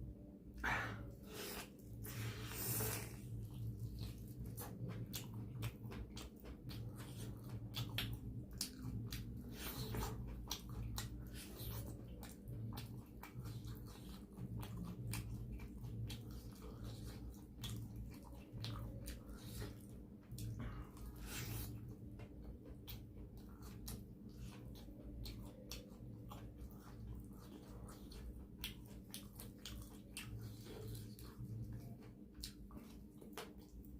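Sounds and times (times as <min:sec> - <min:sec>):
steady low hum: 0:00.0 - 0:33.9
wet chewing and mouth clicks: 0:00.6 - 0:33.9.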